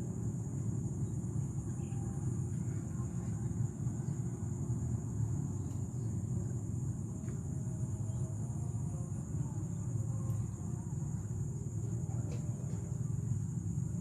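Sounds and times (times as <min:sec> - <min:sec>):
insects droning: 0:00.0 - 0:14.0.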